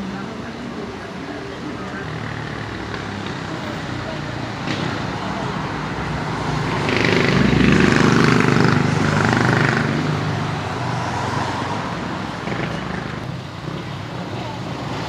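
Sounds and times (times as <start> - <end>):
road traffic hum: 0.0 - 15.0
vehicle passing close by: 4.5 - 14.0.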